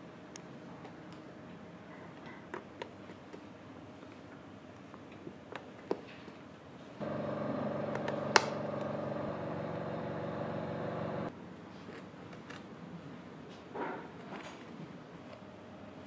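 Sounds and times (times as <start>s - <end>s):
power tool motor running: 7.0s - 11.3s.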